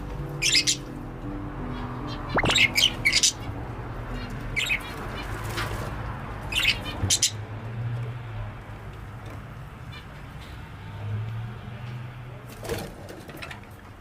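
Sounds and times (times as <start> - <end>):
budgerigar chirping: 0.4 - 0.9, 1.7 - 3.5, 4.1 - 5.3, 6.5 - 7.4.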